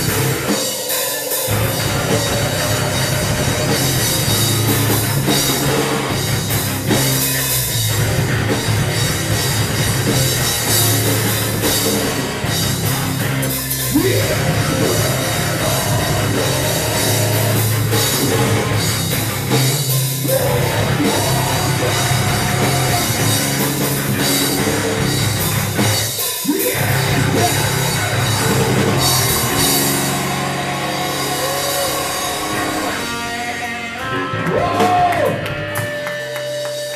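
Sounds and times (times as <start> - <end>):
heavy rock band playing: 0.0 - 36.9.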